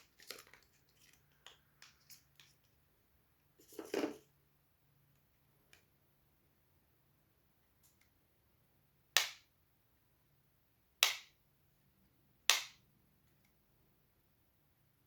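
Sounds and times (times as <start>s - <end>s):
sharp snaps: 9.2s - 9.5s, 11.0s - 11.4s, 12.5s - 12.8s.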